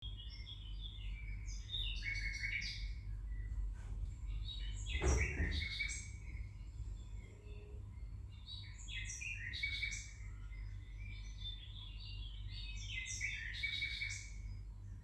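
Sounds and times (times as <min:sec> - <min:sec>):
birds chirping: 0:00.0 - 0:14.9
loud thump: 0:04.9 - 0:05.7.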